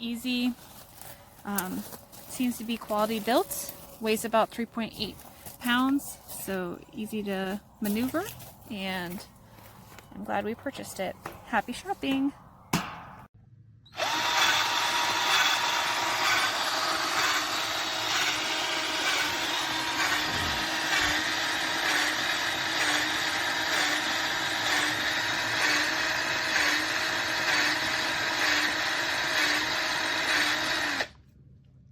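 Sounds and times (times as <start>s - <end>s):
electric drill whining: 13.9s - 31.2s.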